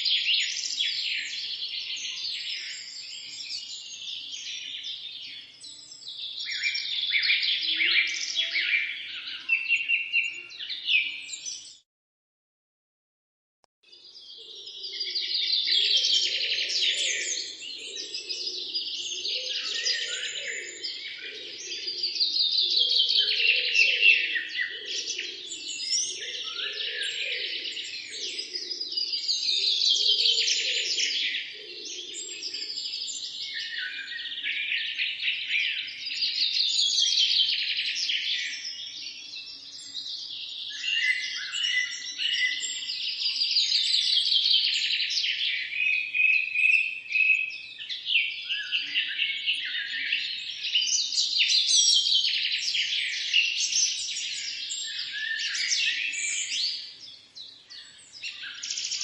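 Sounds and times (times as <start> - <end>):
small birds chirping and trilling: 0.0 - 11.8, 13.9 - 59.0.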